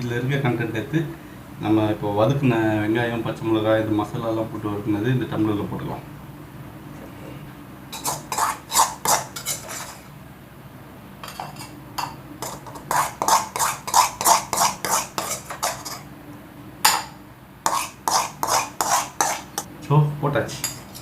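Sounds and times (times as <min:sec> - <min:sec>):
spoon scraping and clinking on pan: 0:07.9 - 0:10.1, 0:11.2 - 0:16.1.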